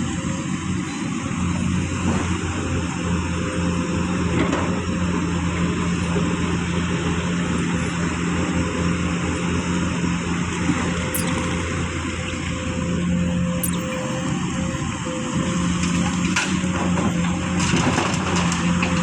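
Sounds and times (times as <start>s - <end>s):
diesel engine running steadily: 0.0s - 10.9s.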